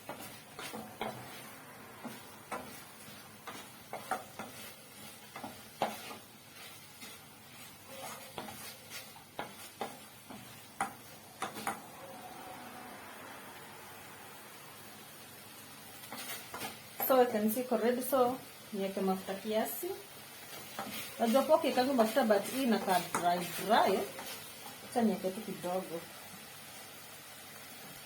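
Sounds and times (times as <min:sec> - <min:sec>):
spoon scraping and knocking a pan: 0:00.0 - 0:11.8, 0:16.0 - 0:17.2, 0:20.4 - 0:25.0
meat sizzling: 0:00.0 - 0:28.0.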